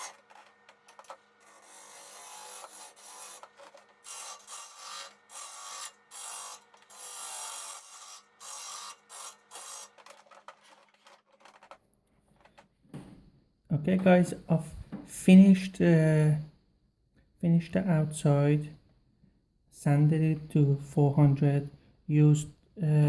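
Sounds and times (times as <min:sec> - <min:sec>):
faint lathe hum: 0:00.0 - 0:10.3.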